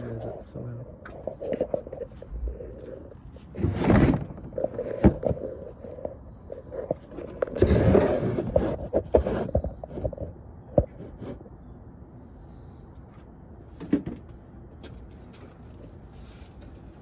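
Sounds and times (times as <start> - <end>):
phone handling scraping and rustling: 1.0 - 11.4.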